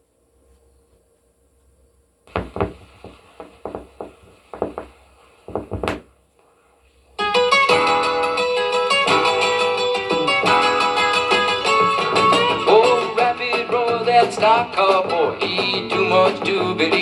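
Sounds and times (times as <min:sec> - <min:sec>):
sharp knocks and taps: 0:02.3 - 0:06.1.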